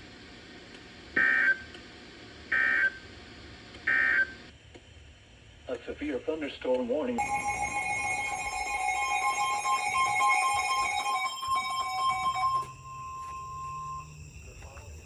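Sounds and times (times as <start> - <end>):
two-pitch electronic alarm tone: 7.2 - 15.0.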